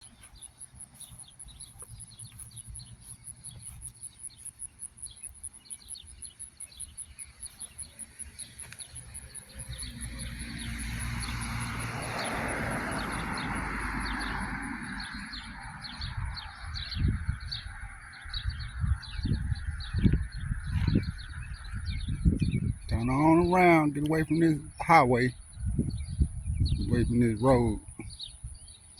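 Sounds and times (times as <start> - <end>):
high insect trill: 0.0 - 22.4
small birds chirping: 0.0 - 28.9
vehicle passing: 7.4 - 18.1.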